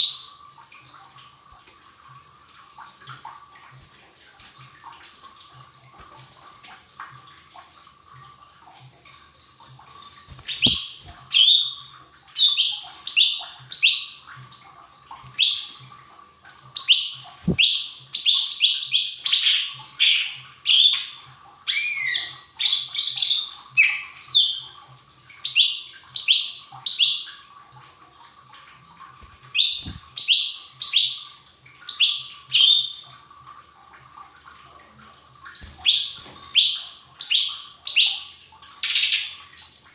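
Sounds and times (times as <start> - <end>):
bird chirping high and sharp: 10.5 - 11.8.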